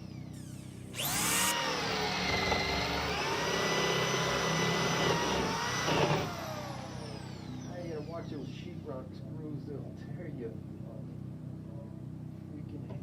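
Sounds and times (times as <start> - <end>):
electric drill whining: 0.0 - 8.6.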